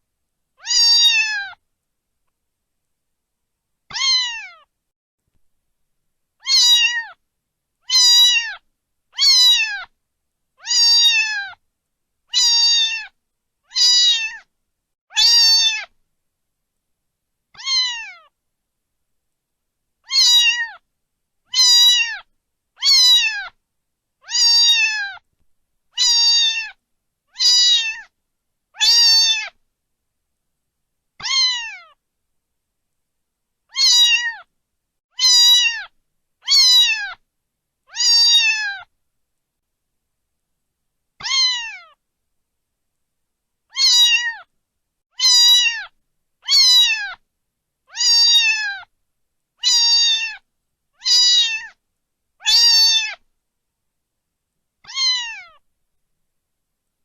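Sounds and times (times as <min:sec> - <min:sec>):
cat meowing: 0:00.6 - 0:01.6, 0:03.9 - 0:04.7, 0:06.4 - 0:07.2, 0:07.8 - 0:08.6, 0:09.2 - 0:09.9, 0:10.6 - 0:11.6, 0:12.3 - 0:14.5, 0:15.1 - 0:16.0, 0:17.6 - 0:18.3, 0:20.0 - 0:20.8, 0:21.5 - 0:23.6, 0:24.2 - 0:25.2, 0:26.0 - 0:28.1, 0:28.8 - 0:29.6, 0:31.2 - 0:32.0, 0:33.7 - 0:34.5, 0:35.1 - 0:37.2, 0:37.9 - 0:38.9, 0:41.2 - 0:42.0, 0:43.7 - 0:44.5, 0:45.1 - 0:47.2, 0:47.9 - 0:48.9, 0:49.6 - 0:50.4, 0:51.0 - 0:51.8, 0:52.4 - 0:53.2, 0:54.8 - 0:55.6.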